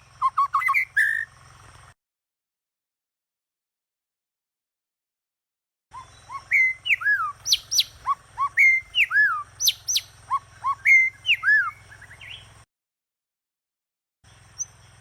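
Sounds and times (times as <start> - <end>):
songbird whistling: 0.0 - 1.3, 5.9 - 12.6, 14.5 - 15.0.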